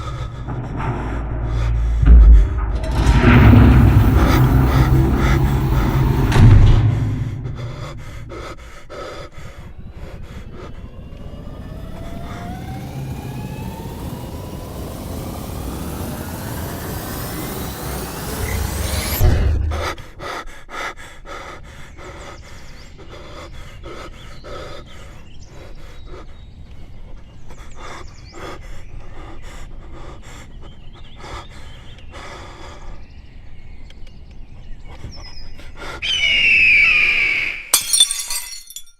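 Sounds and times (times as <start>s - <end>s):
person panting and gasping: 7.4s - 10.8s
loud high-pitched screech: 36.0s - 37.8s.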